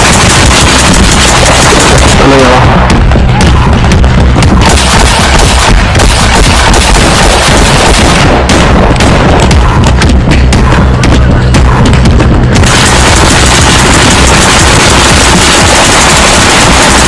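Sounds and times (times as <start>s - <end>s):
paintball markers firing: 0.0s - 2.6s, 4.6s - 10.1s, 12.6s - 17.0s
dense rush of noise: 0.0s - 17.0s.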